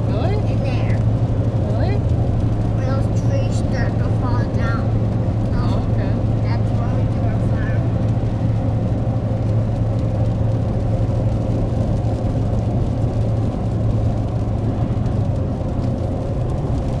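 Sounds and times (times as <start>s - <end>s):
vehicle engine and road drone: 0.0s - 17.0s.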